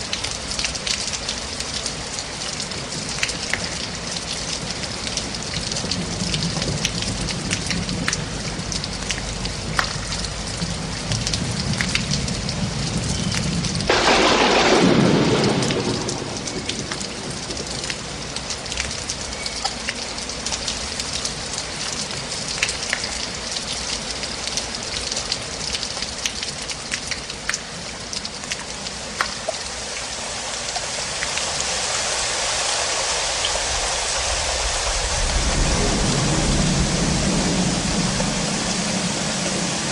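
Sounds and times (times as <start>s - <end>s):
dripping ticks: 0.0s - 30.1s
steady rain: 0.0s - 39.9s
thunderclap rumbling: 5.7s - 19.0s, 34.4s - 39.9s.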